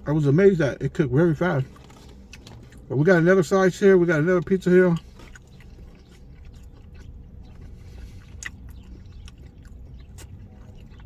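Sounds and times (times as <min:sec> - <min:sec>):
low steady rumble: 0:00.0 - 0:11.0
quiet chewing: 0:01.3 - 0:03.2, 0:03.8 - 0:11.0.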